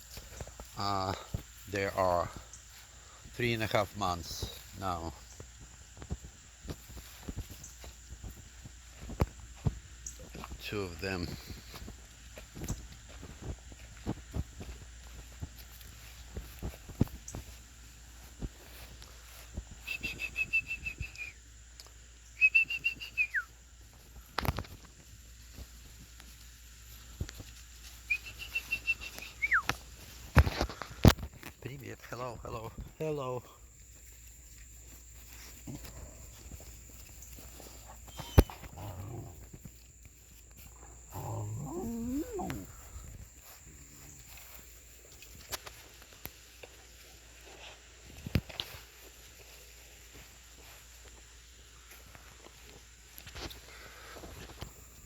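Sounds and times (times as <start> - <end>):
songbird whistling rapid notes: 19.9 - 21.4, 22.4 - 23.5, 28.1 - 29.7
puppy whining: 38.1 - 39.2, 41.1 - 42.8
puppies growling: 38.1 - 39.6, 40.8 - 43.0.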